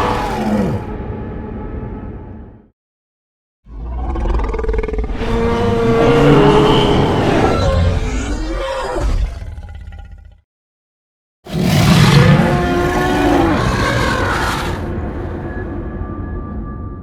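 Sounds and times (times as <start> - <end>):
dinosaur roar: 3.7 - 10.4, 11.5 - 15.1.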